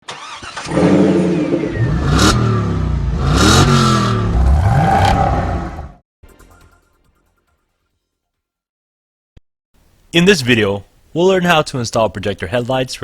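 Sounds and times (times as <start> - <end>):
car engine revving: 0.2 - 6.0.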